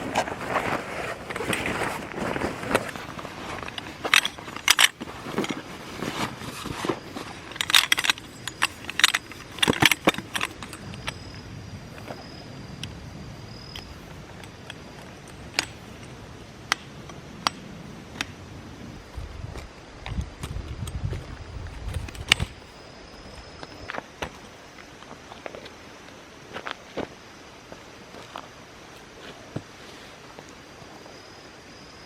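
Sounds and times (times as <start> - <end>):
small hard objects clinking: 2.8 - 11.2.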